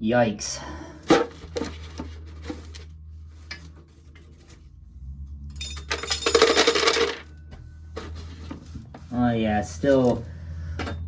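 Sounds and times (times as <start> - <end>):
steady low hum: 0.0 - 11.0
corn kernels clattering: 5.9 - 7.2.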